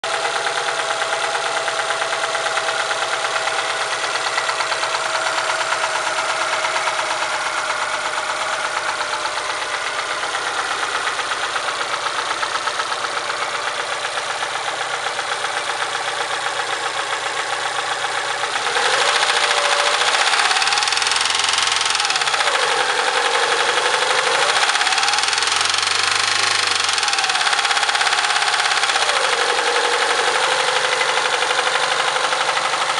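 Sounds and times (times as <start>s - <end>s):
car engine running: 0.1s - 32.9s.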